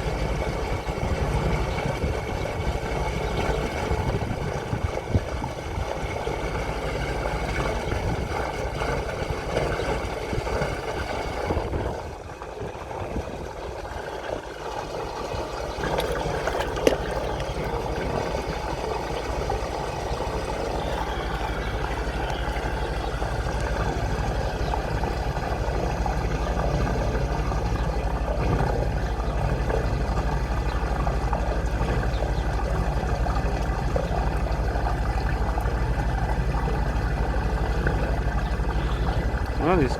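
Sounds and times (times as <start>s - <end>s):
water rushing through drain: 0.0s - 39.9s
machine engine running: 15.6s - 39.9s.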